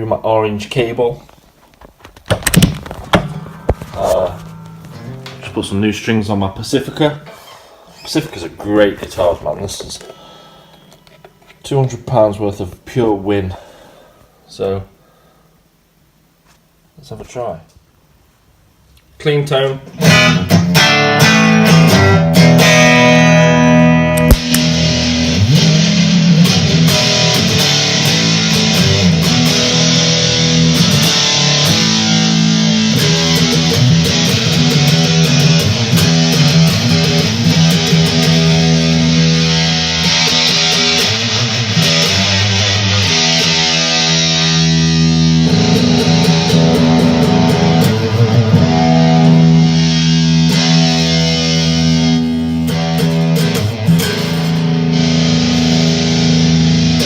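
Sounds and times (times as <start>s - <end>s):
distorted electric guitar chords: 2.3s - 7.4s, 19.8s - 57.0s.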